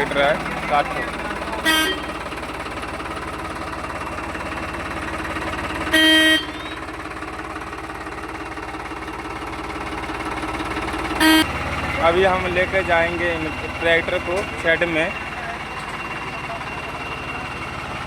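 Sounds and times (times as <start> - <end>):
tractor diesel engine idling: 0.0 - 18.0
loud horn blast: 1.5 - 2.2, 5.9 - 6.8, 11.2 - 11.6.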